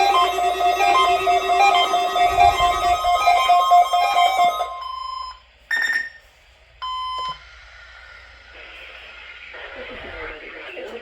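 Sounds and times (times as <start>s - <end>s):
electronic alarm melody: 0.0s - 6.2s
short electronic beeps: 0.0s - 6.2s.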